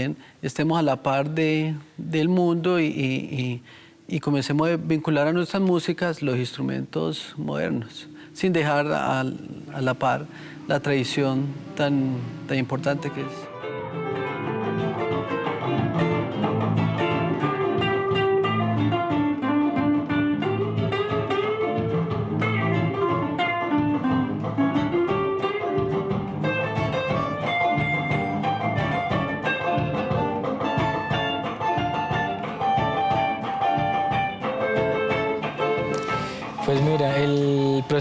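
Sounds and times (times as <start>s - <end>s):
guitar melody: 0.0s - 38.0s.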